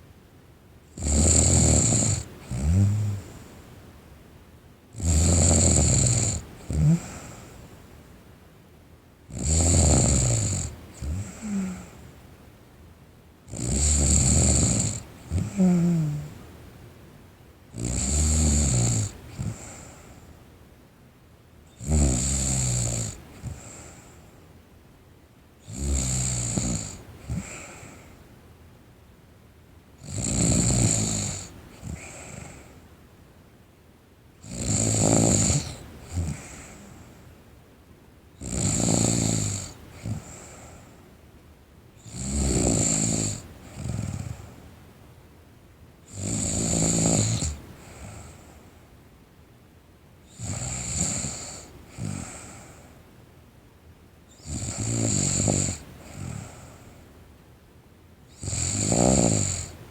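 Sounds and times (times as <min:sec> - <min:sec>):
girl snoring loudly: 0:01.0 - 0:03.2, 0:05.0 - 0:07.4, 0:09.3 - 0:11.9, 0:13.5 - 0:16.4, 0:17.8 - 0:19.8, 0:21.8 - 0:23.8, 0:25.7 - 0:27.9, 0:30.0 - 0:32.6, 0:34.4 - 0:36.7, 0:38.4 - 0:40.5, 0:42.0 - 0:44.4, 0:46.1 - 0:48.2, 0:50.3 - 0:52.5, 0:54.4 - 0:56.5, 0:58.4 - 0:59.8.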